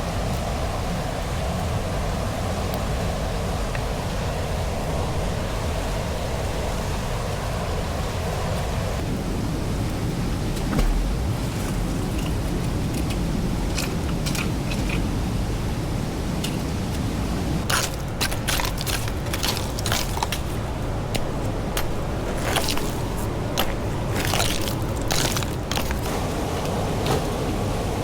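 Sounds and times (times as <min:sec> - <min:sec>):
stream water flowing: 0:00.0 - 0:28.0
gravel shaken in a pan: 0:17.6 - 0:26.1.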